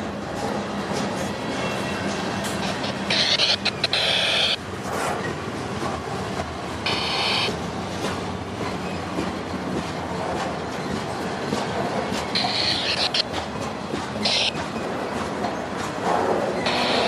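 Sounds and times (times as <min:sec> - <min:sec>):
wheels clicking over rail joints: 0:00.0 - 0:17.0
wheel squeal: 0:12.3 - 0:13.2, 0:14.2 - 0:14.6, 0:16.6 - 0:17.0.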